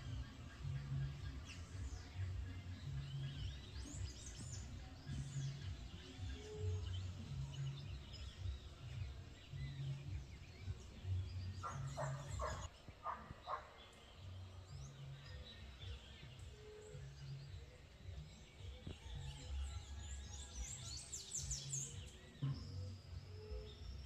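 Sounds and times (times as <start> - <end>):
low rumbling background: 0.0 - 12.7
birds chirping and calling: 0.0 - 24.0.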